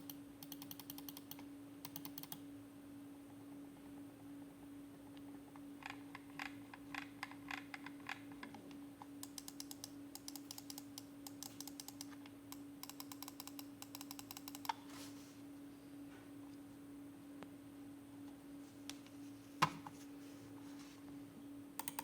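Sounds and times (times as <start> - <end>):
mouse buttons clicking: 9.2 - 14.8.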